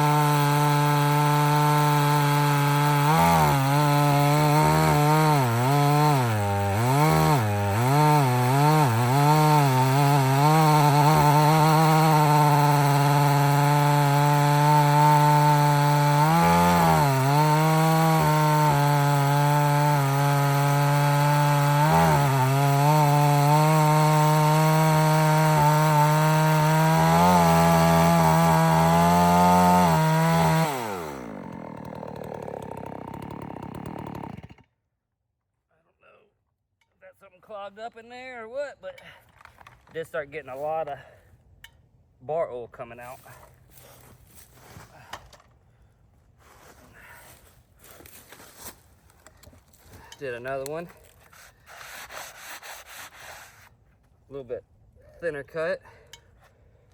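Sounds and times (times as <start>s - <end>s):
chainsaw cutting wood: 0.0s - 34.8s, 47.3s - 53.8s.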